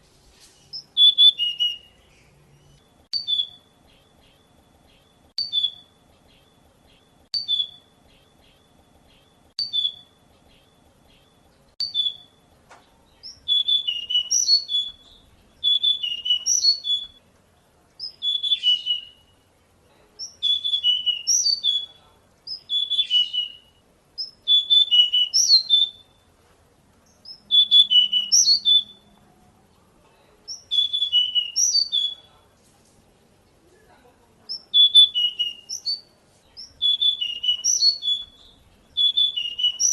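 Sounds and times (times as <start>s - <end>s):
bird twittering song: 0.4s - 26.3s, 27.0s - 32.4s, 34.4s - 39.9s
bird whistled notes: 0.6s - 12.4s, 13.2s - 17.2s, 18.0s - 19.3s, 20.2s - 21.9s, 22.5s - 26.2s, 27.2s - 29.1s, 30.5s - 32.3s, 34.5s - 39.9s.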